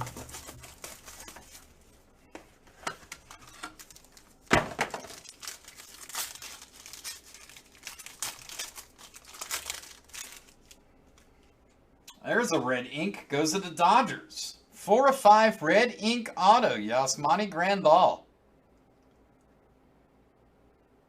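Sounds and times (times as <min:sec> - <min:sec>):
plastic packaging crinkling and tearing: 0:00.0 - 0:02.0, 0:03.0 - 0:11.3.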